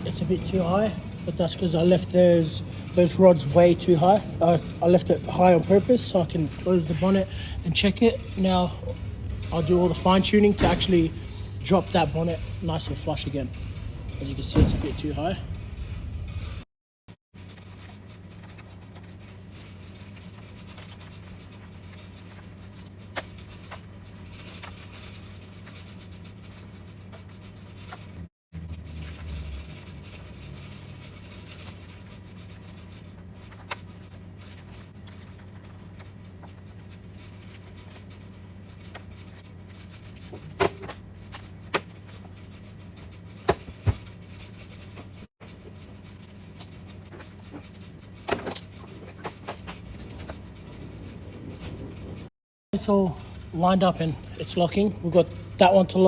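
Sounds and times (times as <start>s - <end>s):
low hum: 0.0s - 16.6s.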